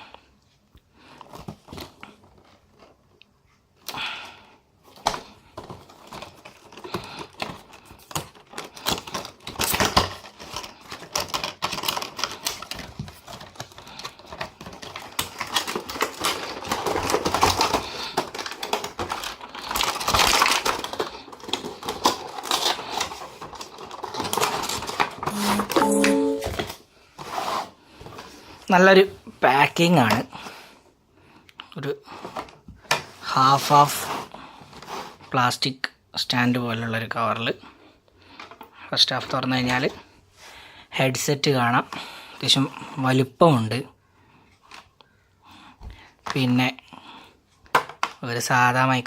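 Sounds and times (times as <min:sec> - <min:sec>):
packaging clicks crinkles and rustles: 0:00.2 - 0:27.2, 0:37.1 - 0:40.2, 0:44.0 - 0:49.0.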